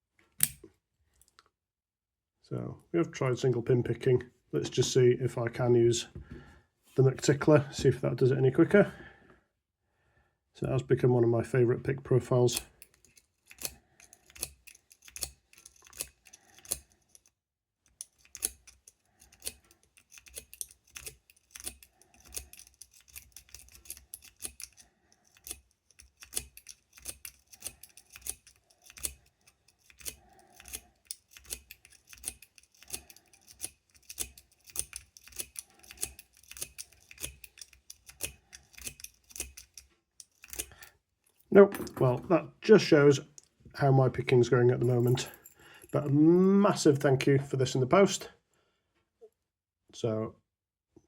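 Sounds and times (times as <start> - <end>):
lock pick clicking in padlock: 0.4 - 0.6, 12.6 - 40.9.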